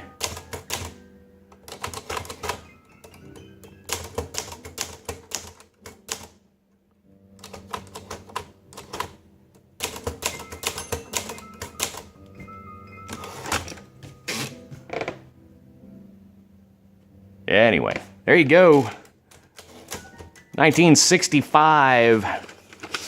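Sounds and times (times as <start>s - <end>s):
typewriter typing: 0.1s - 1.0s, 1.6s - 6.4s, 7.4s - 9.2s, 9.8s - 12.1s, 18.6s - 21.2s.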